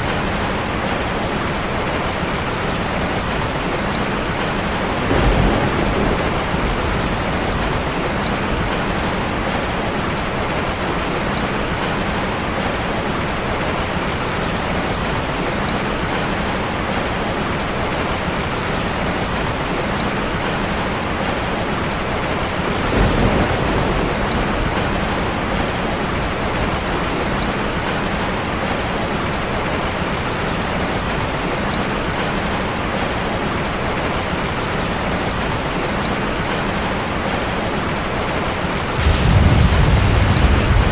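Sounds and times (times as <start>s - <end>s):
heavy rain: 0.0s - 40.9s
low rumble: 39.0s - 40.9s.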